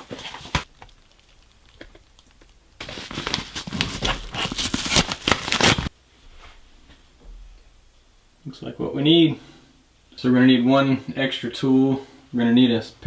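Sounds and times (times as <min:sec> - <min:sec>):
packaging crinkling: 0:00.0 - 0:05.9.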